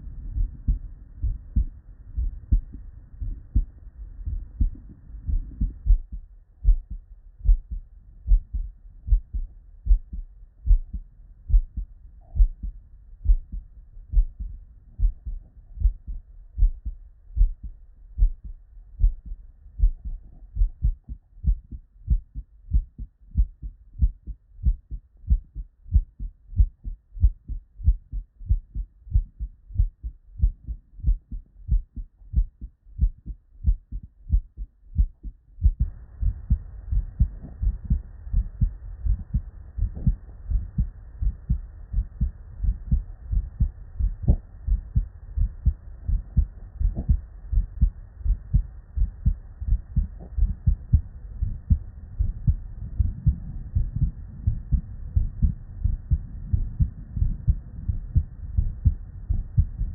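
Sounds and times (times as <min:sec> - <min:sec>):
heartbeat through stethoscope: 0:00.0 - 0:59.9
background hiss: 0:35.0 - 0:59.9.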